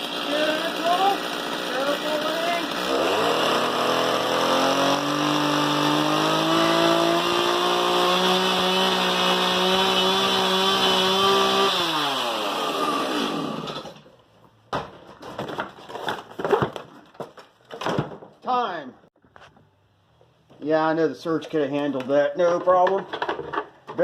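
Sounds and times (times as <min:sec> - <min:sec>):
chainsaw cutting cardboard: 0:00.0 - 0:14.1
knocks and rustles: 0:14.7 - 0:18.4, 0:22.4 - 0:24.0.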